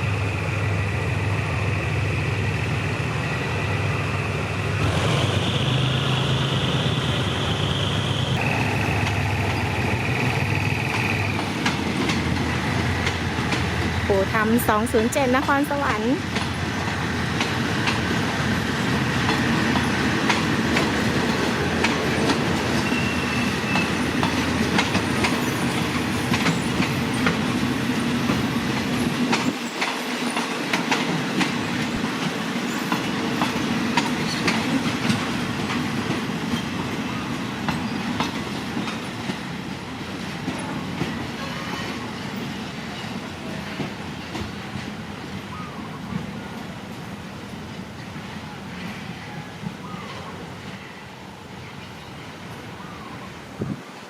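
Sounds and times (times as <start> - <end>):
diesel passenger train rolling by: 0.0 - 54.0
wheels clacking over rail joints: 8.4 - 45.0
wheel squeal: 22.8 - 24.1.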